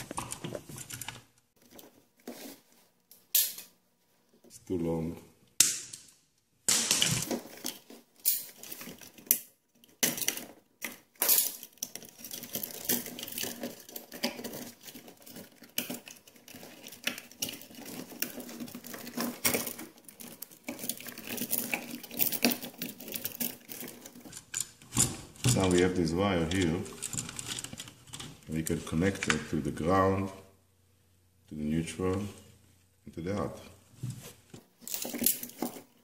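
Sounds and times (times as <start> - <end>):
wire scraping rustles: 7.0 - 28.6, 33.9 - 36.0.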